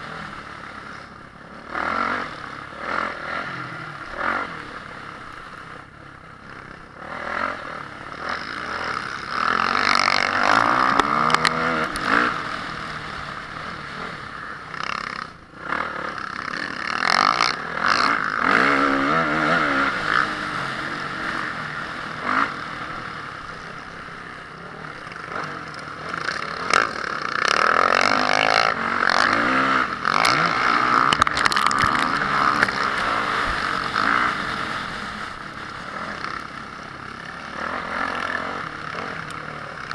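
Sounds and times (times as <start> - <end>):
motorcycle engine revving: 0.0 - 39.9
bike rattling and clattering: 8.3 - 12.4, 14.7 - 22.4, 24.8 - 39.9.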